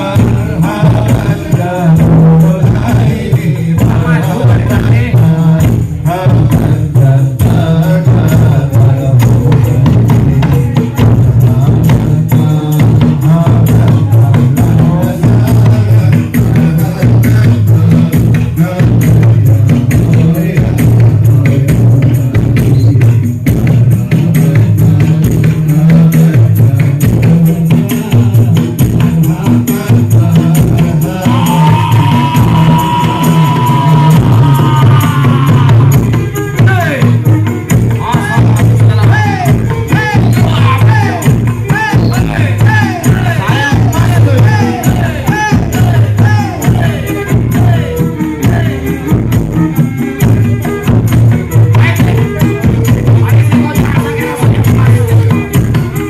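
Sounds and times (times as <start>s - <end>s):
loud music with heavy bass: 0.0s - 56.0s
tambourine-like percussion: 0.0s - 56.0s
long held high note: 31.3s - 35.9s.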